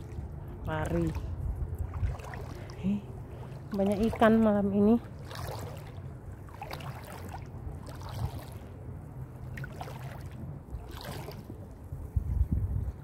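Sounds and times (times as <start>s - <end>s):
feet sloshing through water: 0.0s - 12.0s
low steady rumble: 0.0s - 13.0s.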